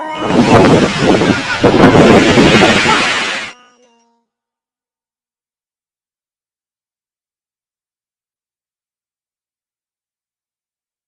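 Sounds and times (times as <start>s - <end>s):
sped-up pop song: 0.0s - 4.2s.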